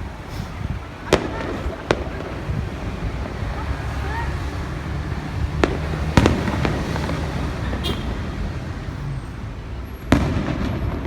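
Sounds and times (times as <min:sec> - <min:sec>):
fireworks bangs with echo: 0:00.0 - 0:08.8, 0:09.4 - 0:11.0
low outdoor background noise: 0:00.0 - 0:11.0.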